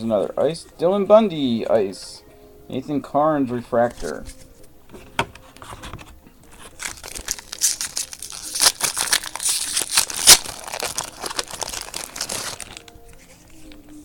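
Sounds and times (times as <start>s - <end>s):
wrapper crinkling and tearing: 6.5s - 13.8s.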